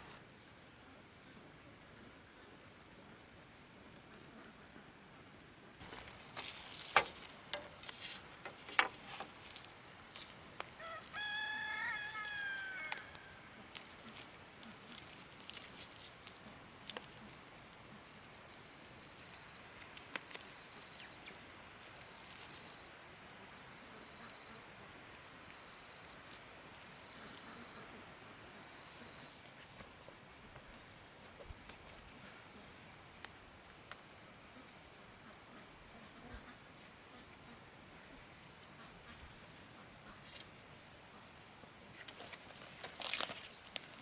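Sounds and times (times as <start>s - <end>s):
rustling: 5.8s - 32.9s, 41.9s - 44.0s
rooster crowing: 10.7s - 13.5s.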